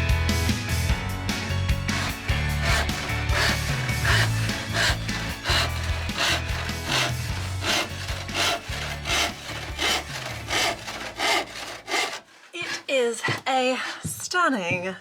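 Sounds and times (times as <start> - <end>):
hand saw cutting plywood: 1.8 - 13.4.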